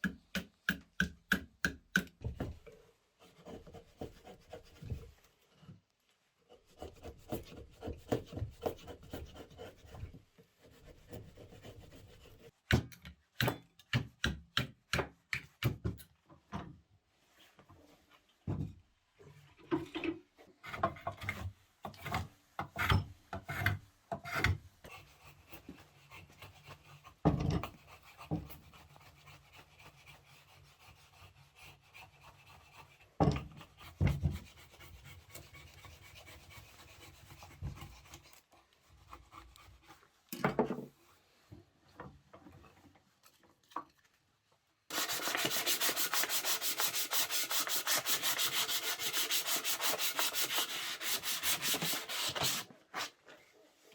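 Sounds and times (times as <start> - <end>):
wood sanding: 44.9 - 52.7
wood rubbing on wood: 44.9 - 53.1.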